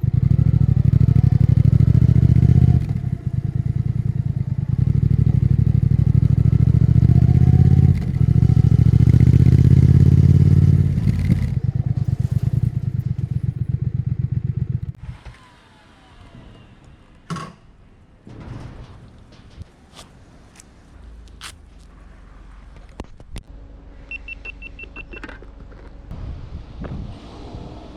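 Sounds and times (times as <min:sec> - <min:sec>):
motorcycle engine idling: 0:00.0 - 0:15.0.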